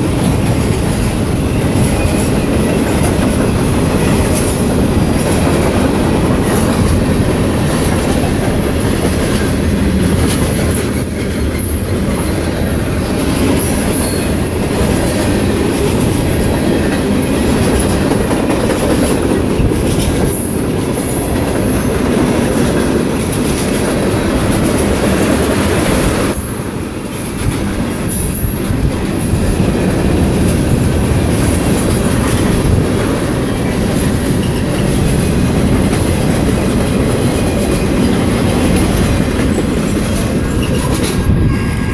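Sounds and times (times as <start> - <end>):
wheels clicking over rail joints: 0.0 - 41.4
freight train rumbling past: 0.0 - 41.9
train wheel squeals: 0.4 - 5.4, 13.2 - 14.7, 33.6 - 36.1, 37.2 - 41.9.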